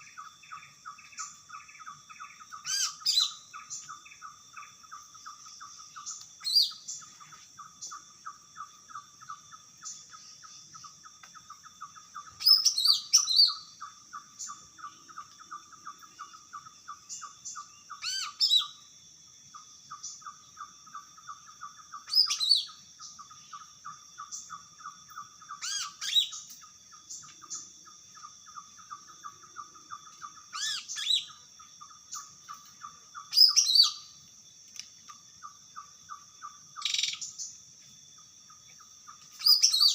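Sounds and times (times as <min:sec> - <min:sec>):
bird singing whistled phrases: 0:12.2 - 0:13.8, 0:22.0 - 0:22.8, 0:30.5 - 0:31.4, 0:33.2 - 0:34.1, 0:39.4 - 0:39.9.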